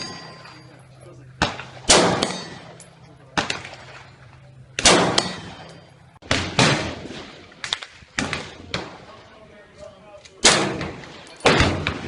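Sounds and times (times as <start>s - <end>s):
rifle shots with echo: 1.3s - 4.1s, 4.7s - 9.2s, 10.4s - 12.0s.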